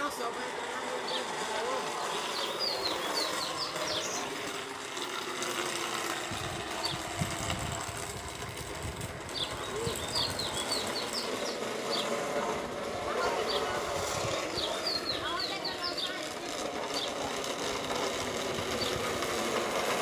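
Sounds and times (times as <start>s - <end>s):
birds chirping: 0.0s - 20.0s
steel wheels rolling on pavement: 0.0s - 20.0s.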